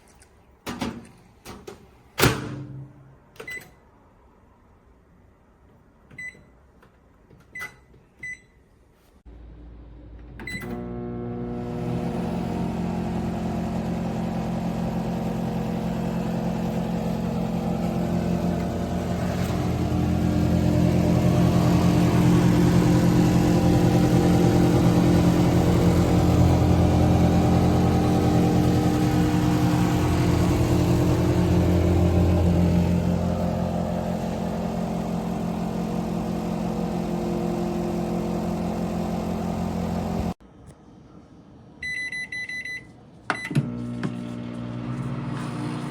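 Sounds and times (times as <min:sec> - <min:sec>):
microwave humming with fan noise: 0:09.3 - 0:40.4, 0:43.3 - 0:45.9
microwave keypad beeping: 0:41.8 - 0:43.7.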